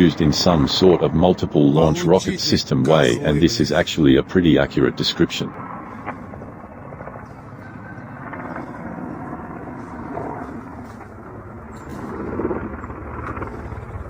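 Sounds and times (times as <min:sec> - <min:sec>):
helicopter rotor and engine rumble: 0:04.6 - 0:11.8.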